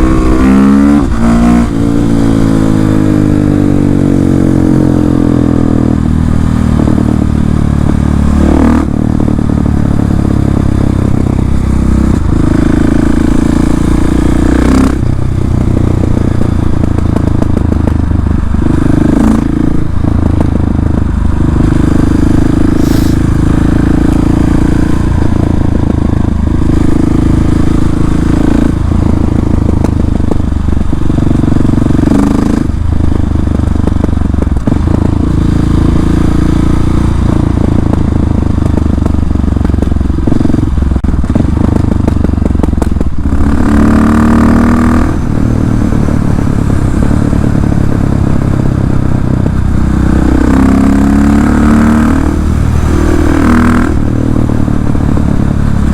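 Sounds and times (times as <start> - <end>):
motorcycle engine: 0.0 - 55.9
exhaust cracks: 14.3 - 43.9.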